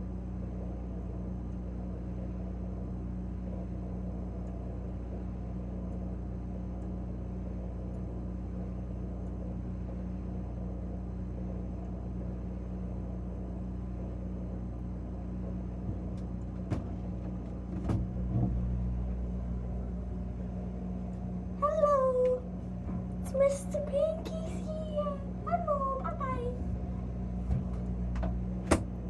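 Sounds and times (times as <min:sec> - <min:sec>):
refrigerator compressor hum: 0:00.0 - 0:29.0.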